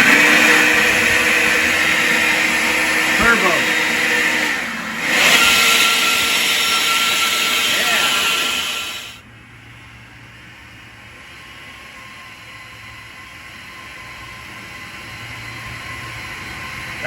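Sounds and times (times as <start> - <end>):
electric blower rushing air: 0.0 - 9.2.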